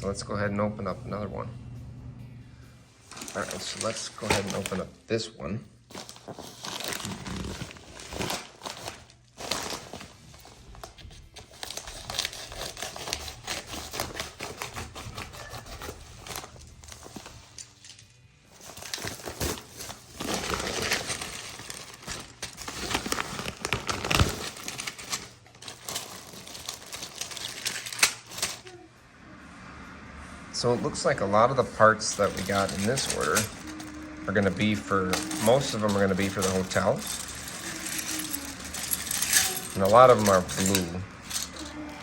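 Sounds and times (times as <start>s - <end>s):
plastic bags crinkling: 3.0s - 5.0s, 5.8s - 28.8s, 31.1s - 42.0s
small plastic pieces rattling: 10.8s - 28.6s, 32.1s - 42.0s.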